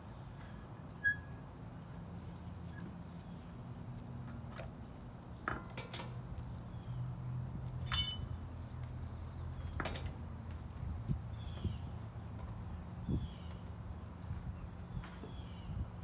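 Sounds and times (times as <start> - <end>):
lug wrench clinking on nuts: 7.8 - 8.4
low steady hum: 7.8 - 8.7.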